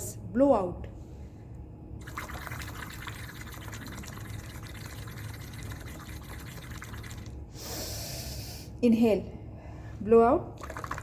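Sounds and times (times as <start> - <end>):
bubbling through a straw in water: 2.0 - 7.4, 10.6 - 11.0.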